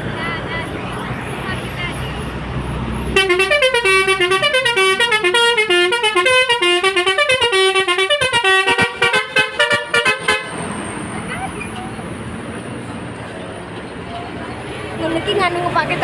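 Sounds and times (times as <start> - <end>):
musical bus horn melody: 3.1 - 10.7.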